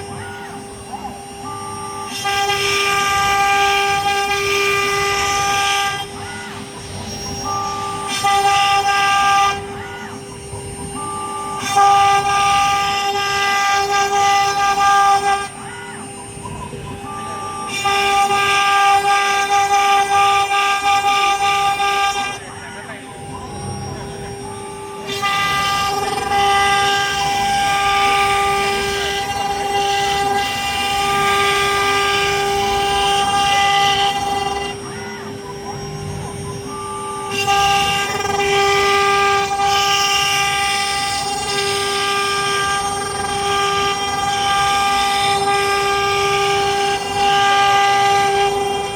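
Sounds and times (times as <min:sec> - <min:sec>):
drive motors whining: 0:00.0 - 0:48.9
router spindle whine: 0:00.0 - 0:48.9.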